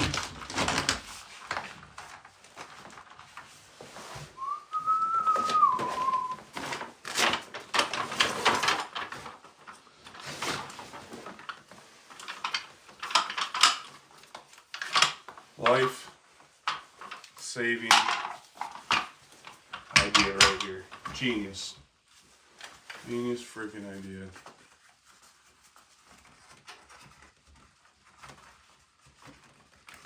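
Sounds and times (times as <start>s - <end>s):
rustling and scraping: 0.0s - 30.0s
person whistling: 4.4s - 6.4s.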